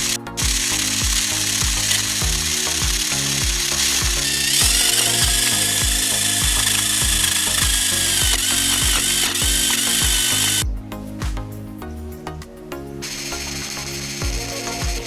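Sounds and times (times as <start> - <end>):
small electric motor whirring: 0.0 - 10.6
background music with beat: 0.0 - 15.0.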